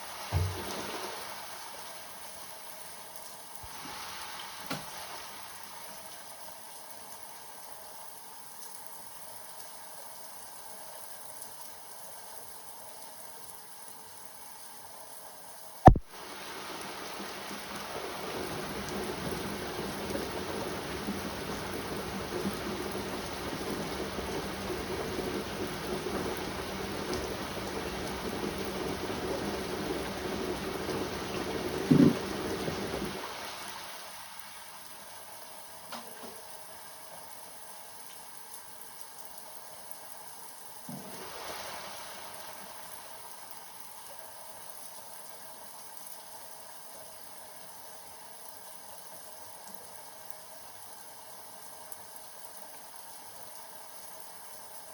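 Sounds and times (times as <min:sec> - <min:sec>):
rain falling: 0:00.0 - 0:54.9
low knock: 0:00.3 - 0:00.9, 0:15.9 - 0:16.1, 0:31.9 - 0:32.3.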